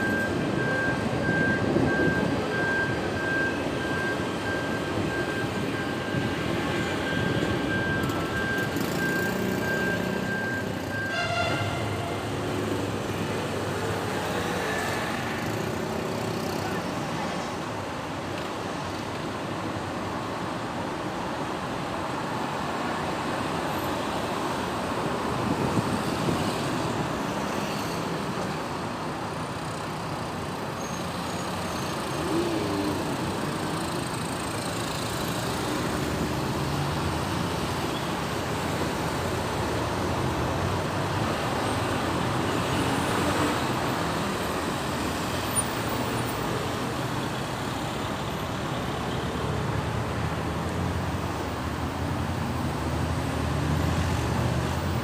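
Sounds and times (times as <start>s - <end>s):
road traffic: 0.0s - 55.0s.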